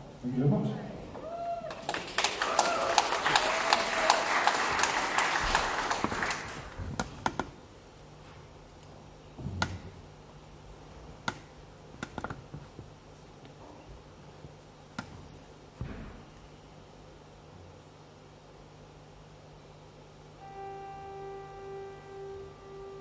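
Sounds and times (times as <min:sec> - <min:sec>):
low amplifier hum: 0:00.0 - 0:23.0
audience applause: 0:01.7 - 0:06.9.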